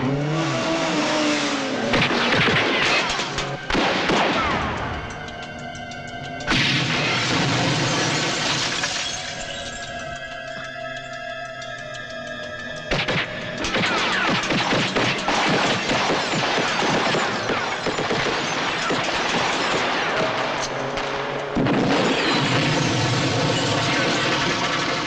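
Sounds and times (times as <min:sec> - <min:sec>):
action film music: 0:00.0 - 0:25.0
rapid gunfire: 0:12.9 - 0:25.0.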